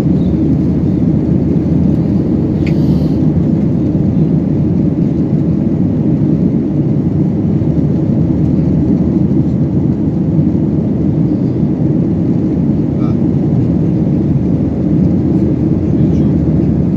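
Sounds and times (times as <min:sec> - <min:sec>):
airliner cabin drone: 0:00.0 - 0:16.9.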